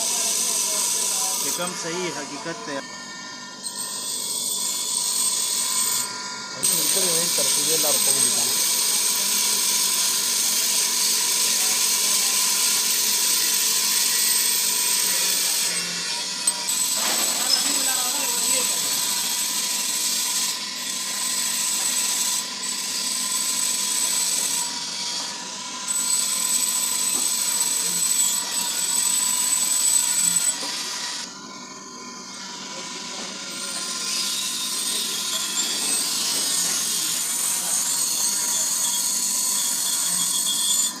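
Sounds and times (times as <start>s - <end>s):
harsh grinding hiss: 0.0s - 2.9s, 6.6s - 16.0s
grinder motor whine: 0.0s - 41.0s.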